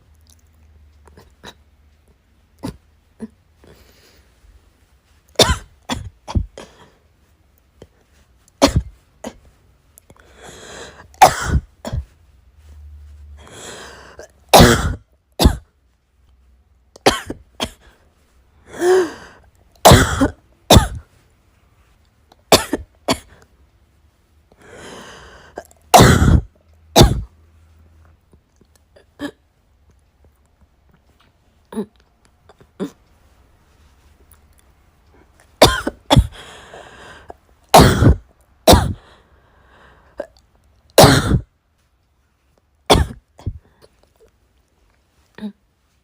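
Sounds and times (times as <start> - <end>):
person coughing: 5.4 - 7.0, 8.6 - 9.5, 11.1 - 12.1, 14.2 - 15.7, 17.0 - 18.0, 19.8 - 21.1, 22.5 - 23.4, 25.6 - 27.3, 35.6 - 36.4, 37.7 - 39.0, 41.0 - 41.5, 42.9 - 43.9
breathy inhalations: 10.1 - 11.1, 13.4 - 14.3, 24.6 - 25.6, 36.3 - 37.4, 39.0 - 40.2.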